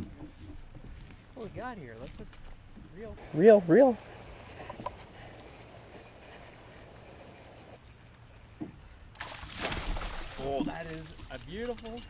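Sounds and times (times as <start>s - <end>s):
fishing reel whirring and ticking: 0.0s - 8.5s.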